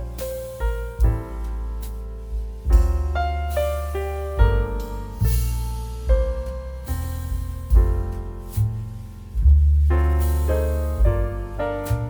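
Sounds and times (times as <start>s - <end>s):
piano chords with bass line: 0.0s - 12.0s.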